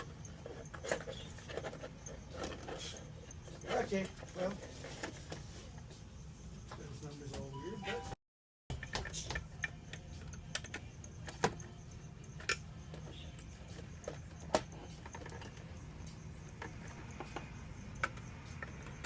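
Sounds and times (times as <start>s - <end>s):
small parts clicking and tapping: 8.7s - 19.0s.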